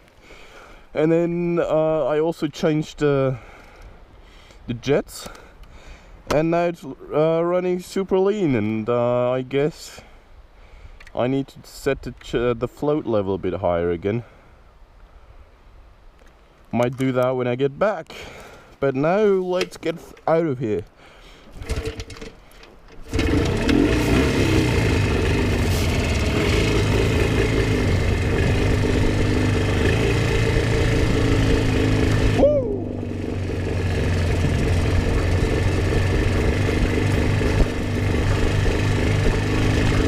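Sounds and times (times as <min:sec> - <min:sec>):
motorcycle engine under throttle: 0:21.6 - 0:22.3, 0:23.0 - 0:40.0.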